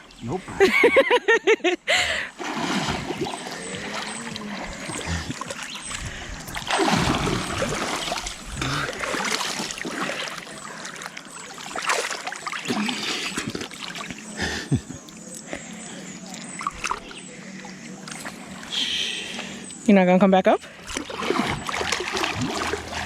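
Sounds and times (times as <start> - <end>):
water splashing around swimmer: 2.3 - 15.7, 20.7 - 23.0.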